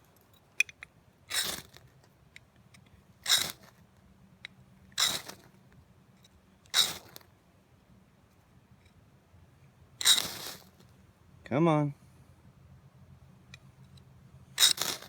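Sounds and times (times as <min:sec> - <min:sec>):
knife scraping fire-starting rod: 0:00.2 - 0:02.1, 0:02.8 - 0:03.8, 0:04.9 - 0:05.6, 0:06.2 - 0:07.3, 0:10.0 - 0:10.9, 0:14.6 - 0:15.0.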